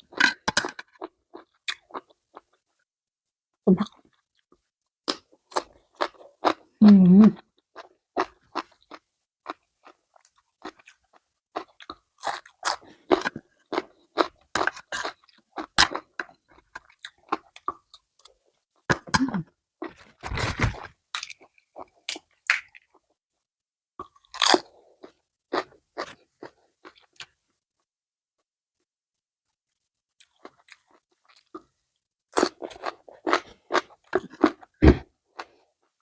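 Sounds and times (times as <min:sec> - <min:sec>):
person crunching and chewing food: 0:00.0 - 0:02.6, 0:03.9 - 0:06.7, 0:07.4 - 0:19.2, 0:19.8 - 0:23.0, 0:24.0 - 0:27.4, 0:30.2 - 0:31.7, 0:32.3 - 0:35.7.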